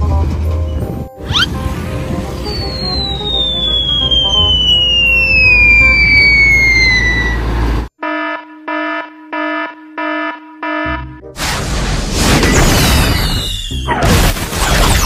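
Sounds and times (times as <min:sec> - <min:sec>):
whistle falling in pitch: 0:02.4 - 0:07.4.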